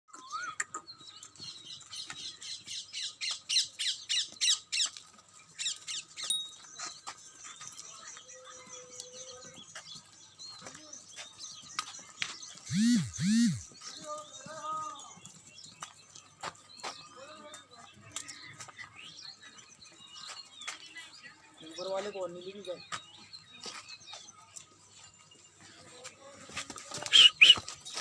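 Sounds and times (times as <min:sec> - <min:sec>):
birds squawking chirps: 0:12.6 - 0:14.7, 0:27.0 - 0:27.8.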